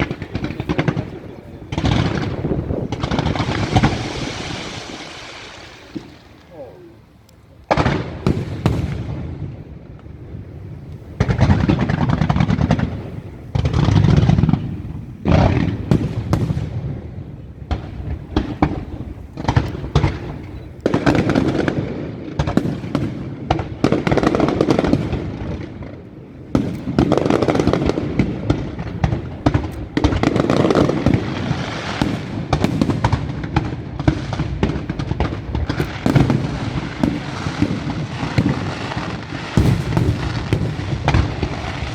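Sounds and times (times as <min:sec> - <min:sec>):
fireworks booming and crackling: 0:00.0 - 0:41.9.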